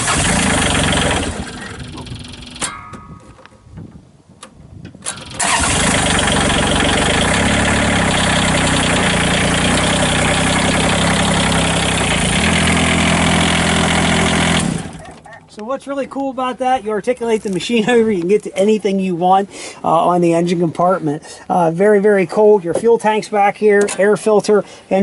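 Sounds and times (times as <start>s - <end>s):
diesel engine starting and running: 0.0s - 2.8s, 5.0s - 15.6s.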